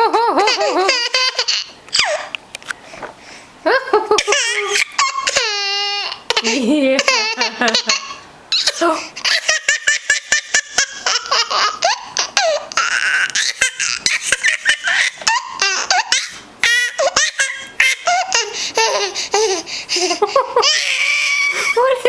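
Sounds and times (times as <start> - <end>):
baby laughing: 0.0 - 2.4, 3.7 - 21.8
baby breathing in: 18.4 - 20.2.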